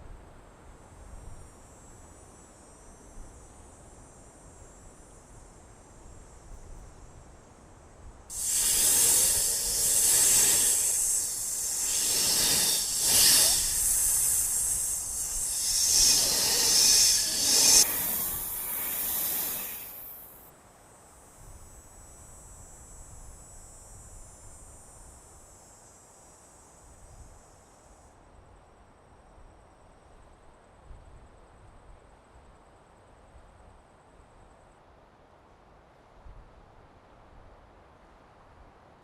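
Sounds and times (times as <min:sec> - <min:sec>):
faint high hiss: 0:00.0 - 0:28.9.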